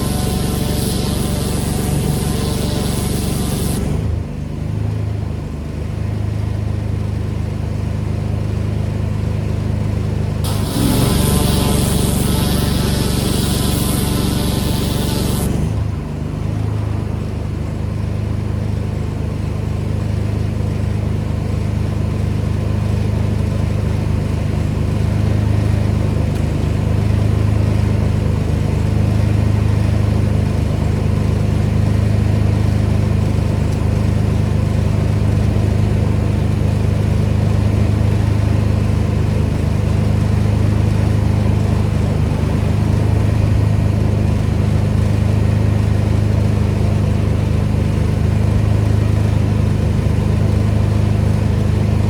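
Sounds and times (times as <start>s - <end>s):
water spray hiss: 0.0s - 4.1s, 10.5s - 15.8s
pressure washer engine running: 0.0s - 4.4s, 10.4s - 19.3s, 25.6s - 52.0s.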